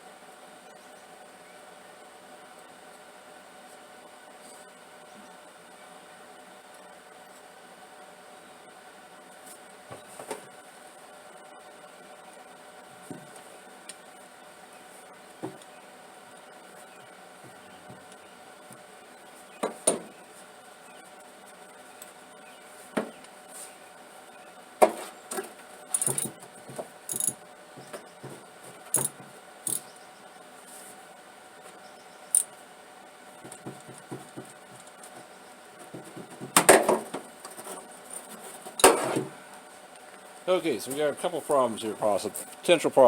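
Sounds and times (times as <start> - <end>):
metal tools clinking and clattering: 25.9 - 26.4, 27.1 - 27.4.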